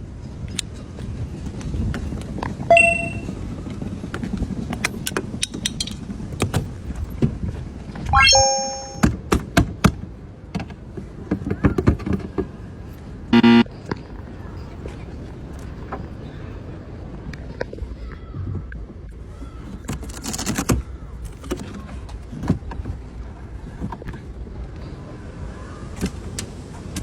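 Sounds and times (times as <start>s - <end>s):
short ding: 2.7s - 3.3s, 8.2s - 9.1s
chime of held tones: 2.7s - 3.4s, 8.2s - 9.1s
brief buzz: 13.4s - 13.6s.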